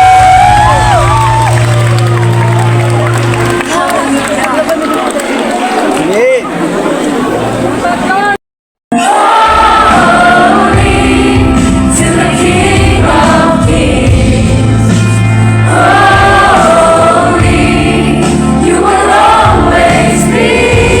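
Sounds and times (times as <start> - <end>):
bass accompaniment: 0.0 - 5.6, 9.2 - 21.0
choir singing: 8.9 - 21.0.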